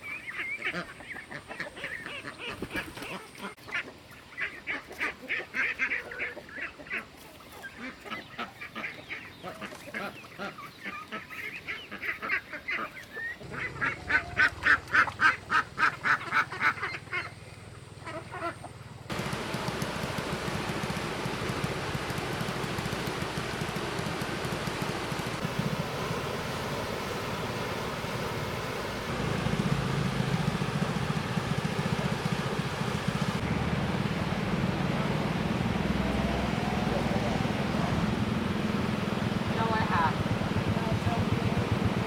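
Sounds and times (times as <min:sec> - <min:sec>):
ducks quacking: 0:00.0 - 0:18.8
steady hiss like rain: 0:19.1 - 0:42.0.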